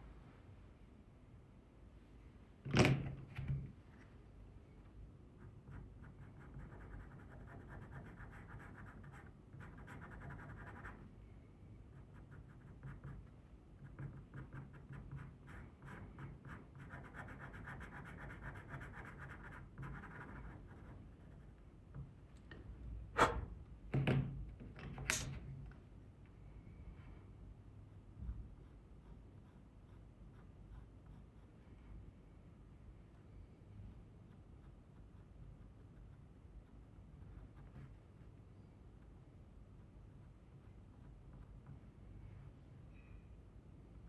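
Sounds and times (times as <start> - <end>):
pastel pencil scratching on paper: 5.4 - 11.0, 12.0 - 21.6, 28.5 - 31.6, 33.9 - 38.3.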